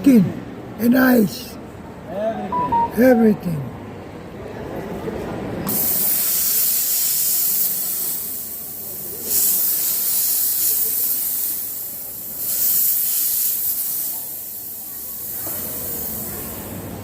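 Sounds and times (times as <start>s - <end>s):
steam cleaner hissing: 5.7s - 16.6s.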